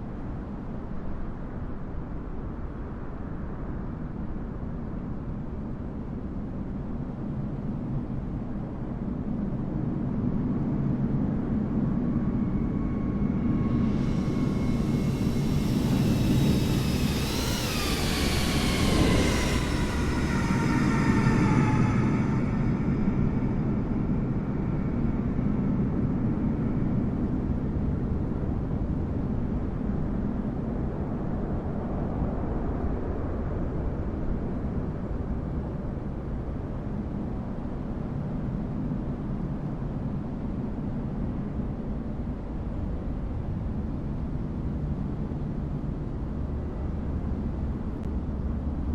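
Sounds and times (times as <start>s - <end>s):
jet engines rumbling: 9.6s - 28.1s
high whining tone: 10.3s - 27.8s.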